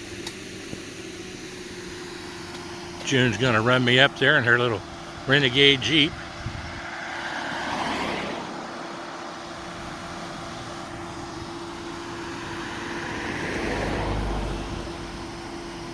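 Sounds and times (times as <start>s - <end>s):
steady hum: 1.1s - 6.9s
vehicles driving past: 1.6s - 15.9s.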